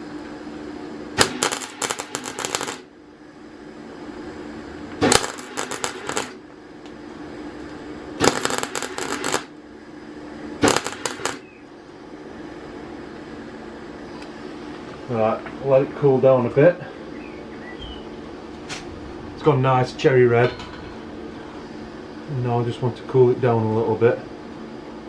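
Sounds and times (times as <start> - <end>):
welder arc crackling: 1.2 - 2.9, 4.9 - 9.6, 10.6 - 11.5.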